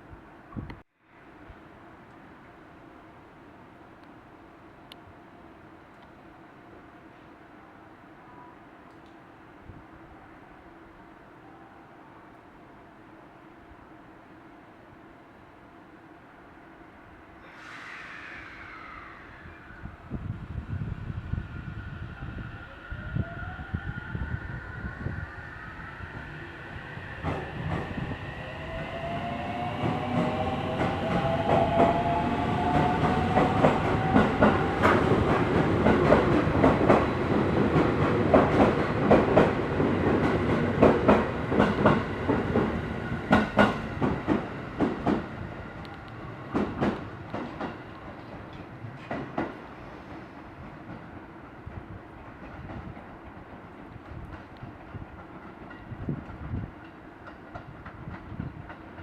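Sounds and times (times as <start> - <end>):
electric train motor whine: 18.4 - 35.2.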